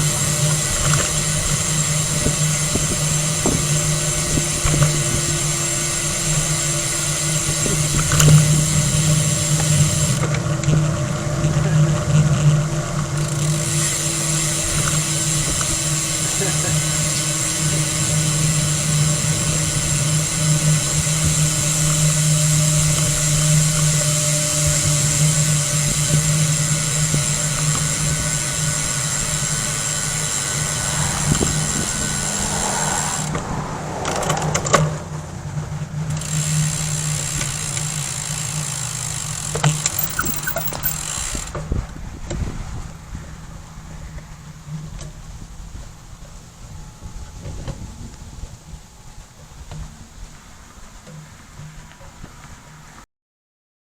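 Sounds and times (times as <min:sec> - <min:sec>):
sharp clicks: 0:39.8 - 0:41.0.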